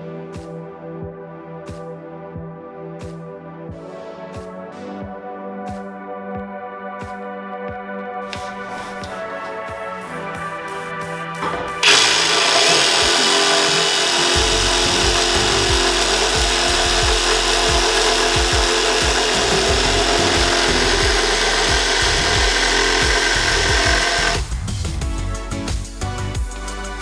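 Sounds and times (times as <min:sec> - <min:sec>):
music with a beat: 0:00.0 - 0:27.0
reciprocating saw cutting wood: 0:08.2 - 0:24.6.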